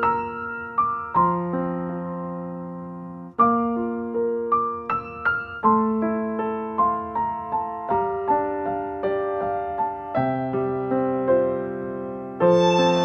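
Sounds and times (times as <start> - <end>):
soft piano melody: 0.0 - 13.0.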